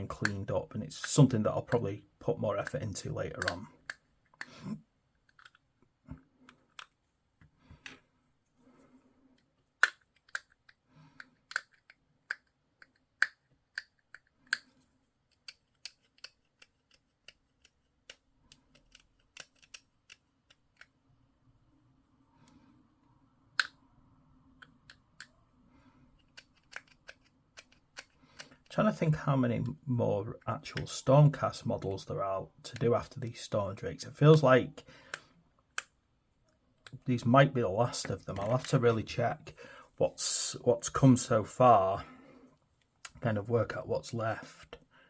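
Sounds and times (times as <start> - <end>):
hobby tools clicking and snipping: 15.3 - 20.9, 26.2 - 28.7.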